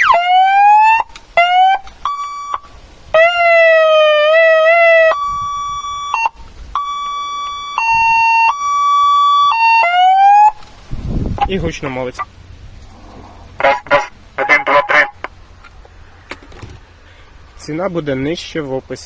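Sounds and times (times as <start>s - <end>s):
car siren loudspeaker tones: 0.0s - 10.6s.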